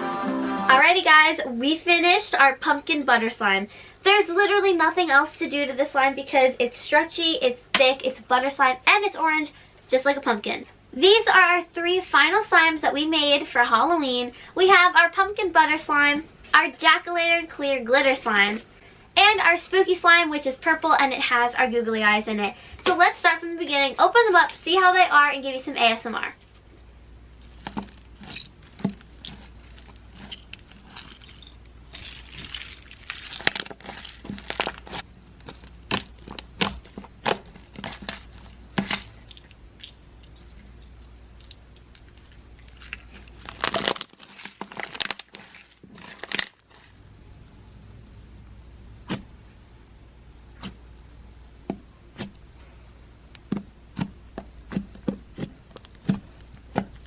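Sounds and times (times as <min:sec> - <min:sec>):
slime squishing and popping: 0:27.4 - 0:40.0, 0:42.2 - 0:46.9.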